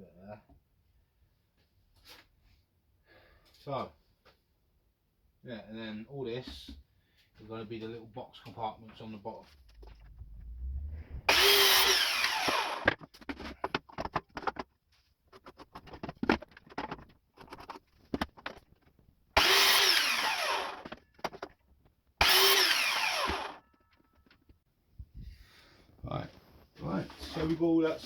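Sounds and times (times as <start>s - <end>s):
electric saw cutting wood: 9.8s - 13.0s, 19.4s - 21.0s, 22.2s - 23.6s
boards knocking and clattering: 12.8s - 19.0s.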